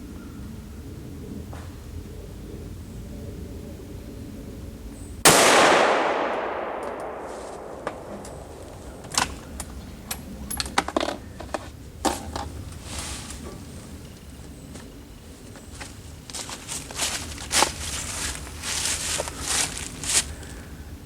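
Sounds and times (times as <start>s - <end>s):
rifle shot: 5.3s - 9.0s.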